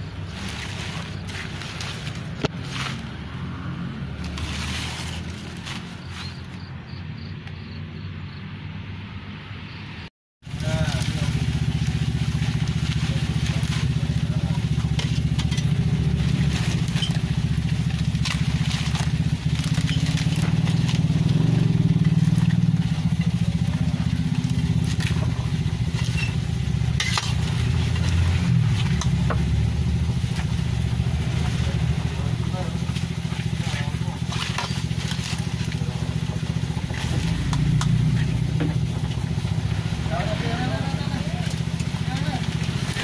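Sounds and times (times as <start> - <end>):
low motor rumble: 0.0 - 8.4, 10.4 - 43.0
sharp clicks and crackles: 10.6 - 43.0.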